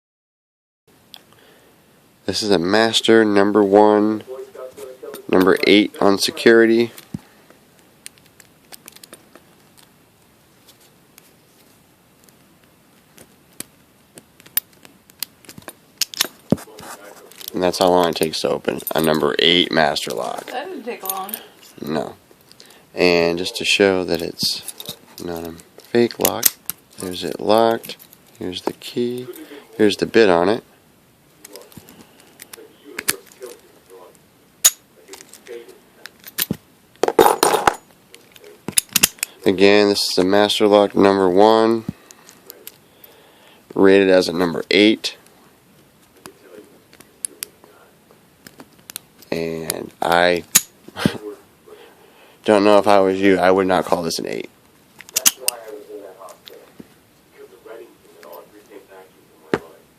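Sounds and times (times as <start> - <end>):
padlock clatter: 38.7 - 39.3
padlock metal clicks: 38.7 - 39.3.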